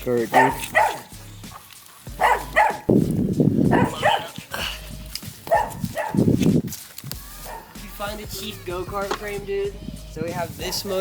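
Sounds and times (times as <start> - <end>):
dog barking: 0.3 - 1.2, 2.1 - 2.9, 3.6 - 4.5, 5.4 - 6.3, 7.4 - 7.8.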